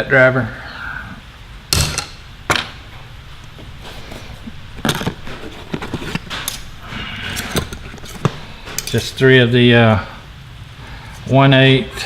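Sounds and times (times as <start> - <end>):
tools clattering: 1.7 - 10.0
hand tools knocking together: 1.8 - 9.6.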